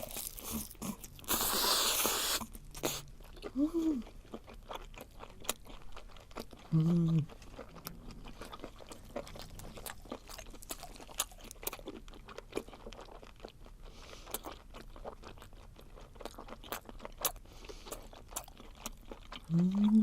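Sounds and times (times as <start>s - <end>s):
close chewing with crunches: 0.0s - 20.0s.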